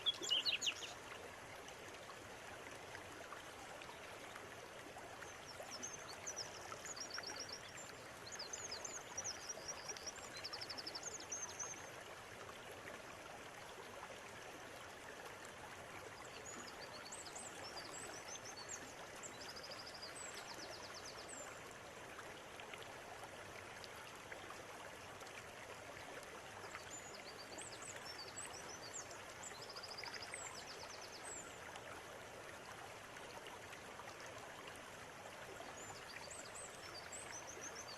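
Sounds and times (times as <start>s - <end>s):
small birds trilling and chirping: 0.0s - 1.0s
river water running: 0.0s - 37.9s.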